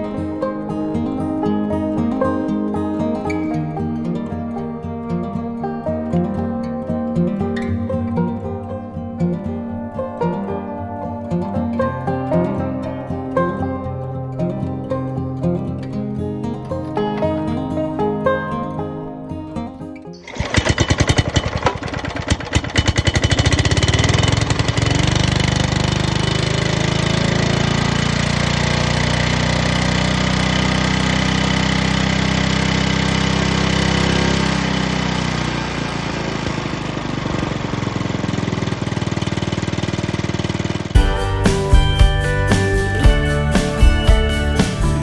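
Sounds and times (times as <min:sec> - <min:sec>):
lawn mower engine running: 0:20.2 - 0:45.0.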